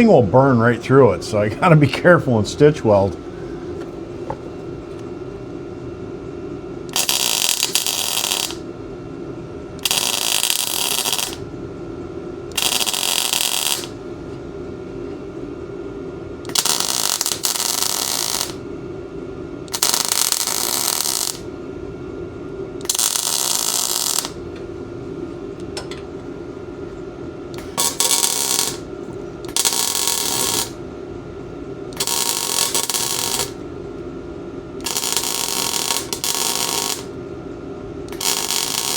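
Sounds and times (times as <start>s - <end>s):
welder steady hum: 0.0s - 38.9s
crackling welding arc: 6.9s - 8.7s, 9.8s - 11.4s, 12.5s - 14.0s, 16.5s - 18.6s, 19.7s - 21.5s, 22.8s - 24.4s, 27.6s - 28.9s, 29.5s - 30.8s, 32.0s - 33.6s, 34.8s - 37.2s, 38.1s - 38.9s.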